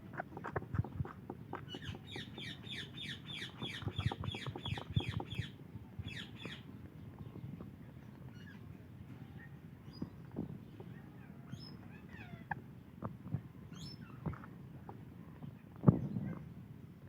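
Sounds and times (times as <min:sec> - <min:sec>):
parrot chirping: 0:01.5 - 0:05.6.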